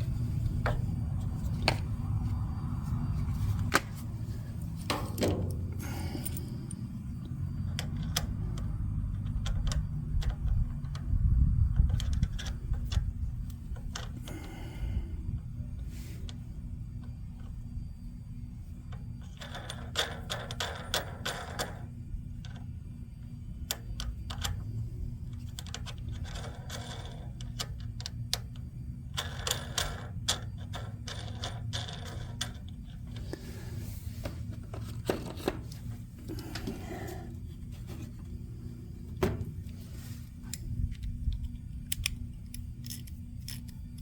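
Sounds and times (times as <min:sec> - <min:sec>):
steady low hum: 0:00.0 - 0:44.0
ratchet wrench clicking: 0:40.5 - 0:44.0.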